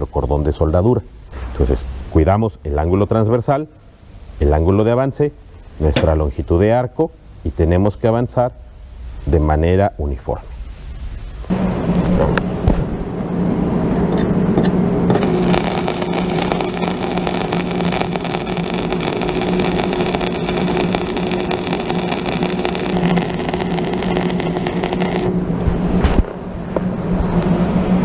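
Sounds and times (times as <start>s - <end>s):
constant welding buzz: 0.0s - 1.0s, 14.1s - 25.8s
welding arc crackling: 15.1s - 25.4s.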